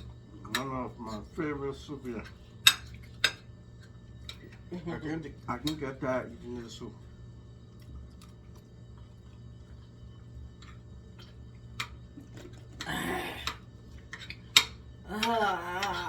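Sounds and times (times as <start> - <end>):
cutlery clicking against dishes: 13.4 - 16.0.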